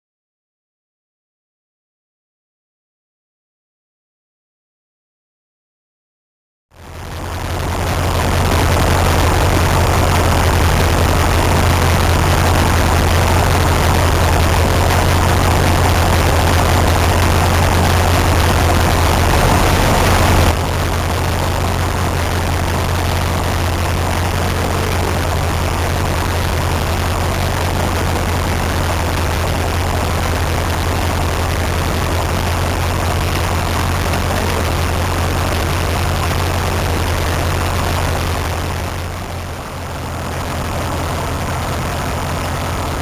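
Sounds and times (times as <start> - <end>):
heavy engine humming: 6.8 - 43.0.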